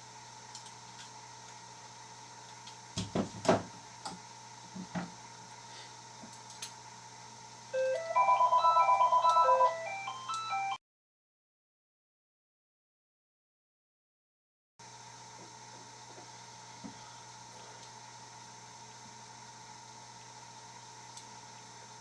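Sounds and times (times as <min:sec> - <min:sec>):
electronic beeping melody: 0:07.8 - 0:10.8.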